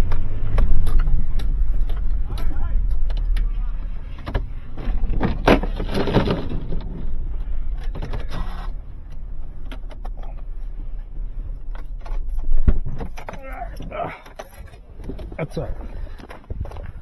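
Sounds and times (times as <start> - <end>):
vehicle engine rumbling: 0.0 - 17.0
metallic knocks and clatter: 4.1 - 10.6.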